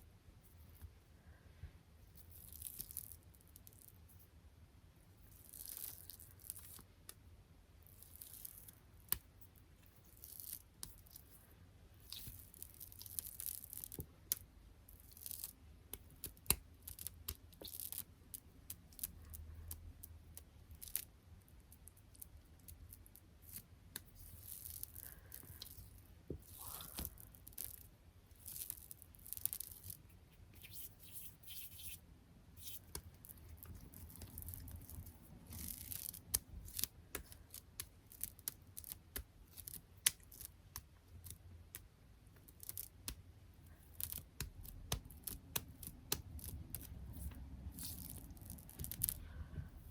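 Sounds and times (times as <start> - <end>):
sticky peeling sounds: 15.0 - 21.1, 32.6 - 49.9
light tapping on sticky objects: 32.6 - 49.7.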